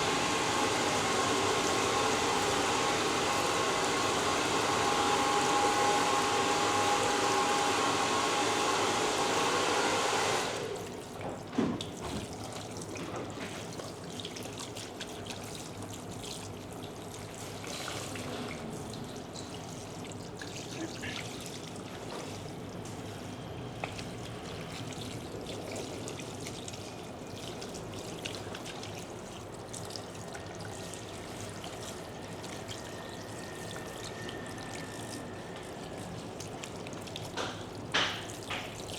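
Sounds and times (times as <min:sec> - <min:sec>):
water trickling and pouring: 0:10.8 - 0:38.9.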